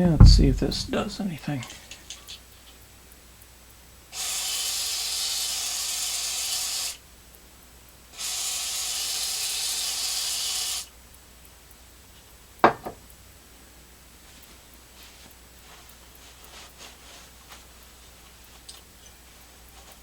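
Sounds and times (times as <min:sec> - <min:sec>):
short knock: 0:00.0 - 0:00.8
aerosol can spraying: 0:04.1 - 0:07.0, 0:08.2 - 0:10.9.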